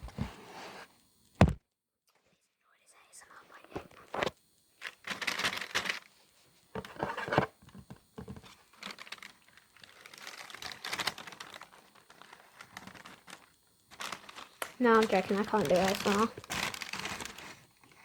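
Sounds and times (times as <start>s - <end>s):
packaging crinkling: 4.8s - 6.1s, 8.2s - 18.0s.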